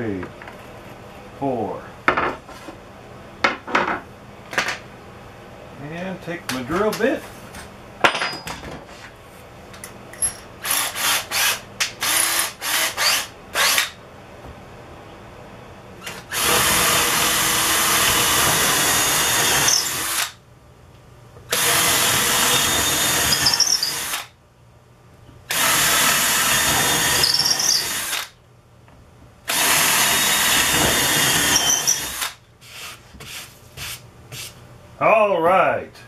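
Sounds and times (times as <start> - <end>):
power drill boring into wood: 10.6 - 13.9, 16.1 - 20.4, 21.5 - 24.3, 25.5 - 28.4, 29.5 - 32.4.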